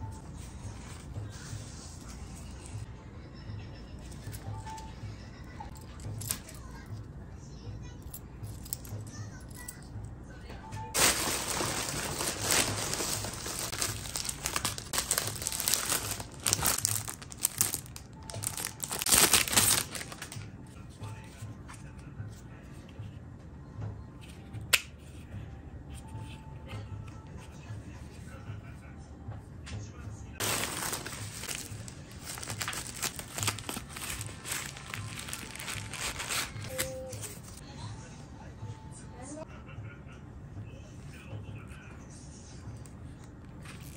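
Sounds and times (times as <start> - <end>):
packaging crinkling and rustling: 10.9 - 20.5, 30.4 - 37.6.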